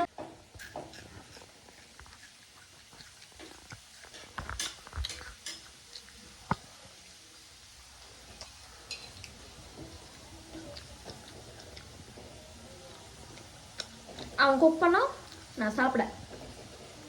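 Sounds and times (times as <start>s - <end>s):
potato slices frying in oil: 0.0s - 17.0s
utensils clicking and knocking: 3.4s - 6.0s.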